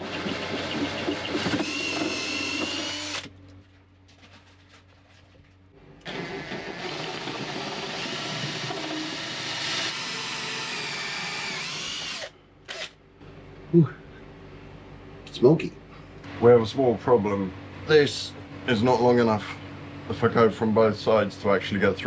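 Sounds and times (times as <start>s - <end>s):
power drill whining: 0.0s - 3.3s, 6.0s - 12.9s.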